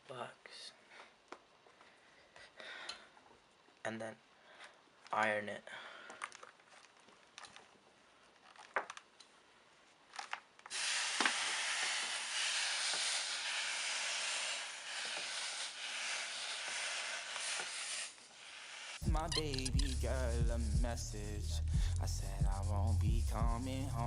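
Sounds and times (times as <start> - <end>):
steam hissing: 10.7 - 19.0.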